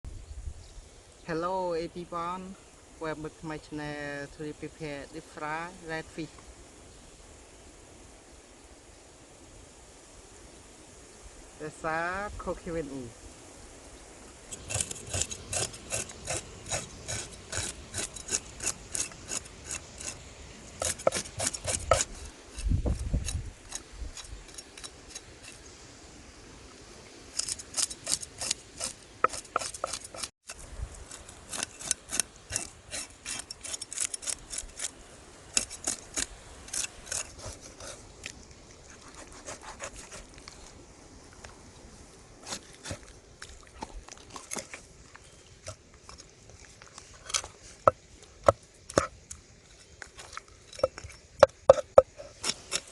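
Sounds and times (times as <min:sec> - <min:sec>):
coconut grating scrapes: 0:14.5 - 0:25.7, 0:27.4 - 0:38.2, 0:38.9 - 0:40.7.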